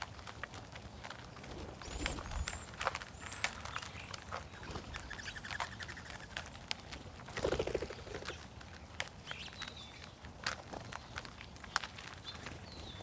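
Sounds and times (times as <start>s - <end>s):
birds tapping and clicking: 0.1s - 13.0s
birds chirping: 1.4s - 6.5s
bird trill: 1.8s - 4.4s.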